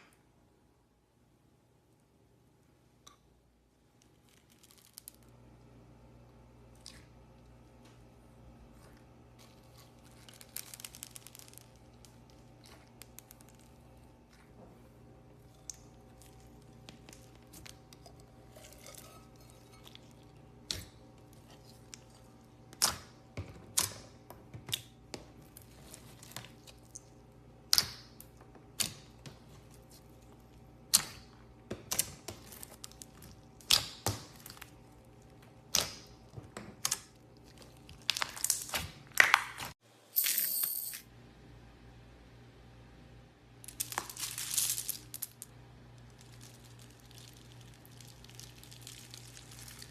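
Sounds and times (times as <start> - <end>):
slime clicking and popping: 31.9 - 34.6.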